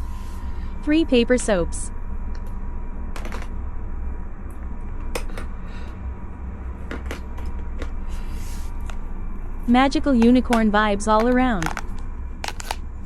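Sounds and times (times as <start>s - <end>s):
steady low hum: 0.0s - 13.0s
packaging clicks and taps: 11.2s - 12.8s.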